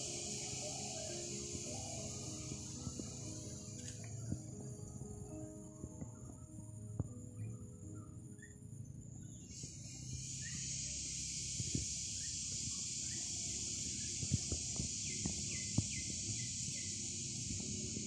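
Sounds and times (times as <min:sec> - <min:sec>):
insects chorus: 0:00.0 - 0:18.0.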